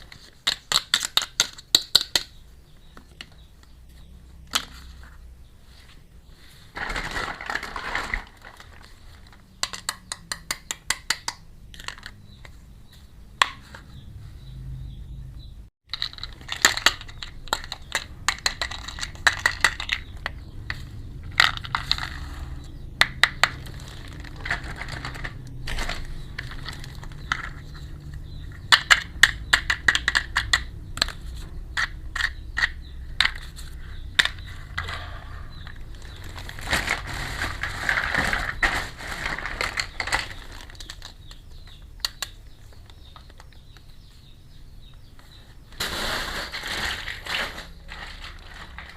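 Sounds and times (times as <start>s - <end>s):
plastic toy pieces crackling: 15.9s - 20.4s, 23.0s - 27.9s, 35.7s - 41.4s, 45.8s - 48.9s.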